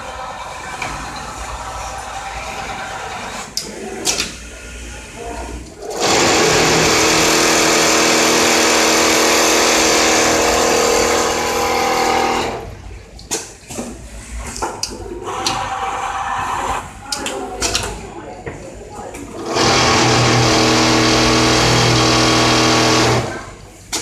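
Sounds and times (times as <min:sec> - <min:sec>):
sewing machine stitching: 0:05.8 - 0:12.8, 0:19.3 - 0:23.6.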